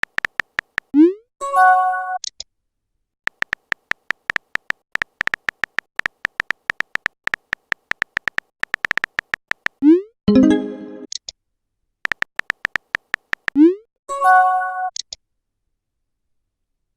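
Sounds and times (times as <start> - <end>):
rising electronic pop: 9.8 - 11.1.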